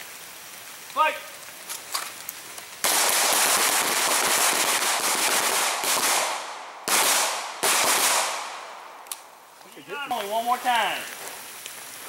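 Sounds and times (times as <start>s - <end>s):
handguns firing rapid shots: 2.8s - 8.7s.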